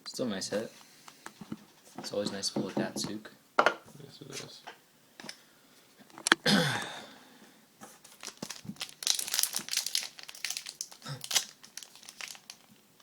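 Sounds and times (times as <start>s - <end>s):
wrapper crinkling and tearing: 8.1s - 13.0s.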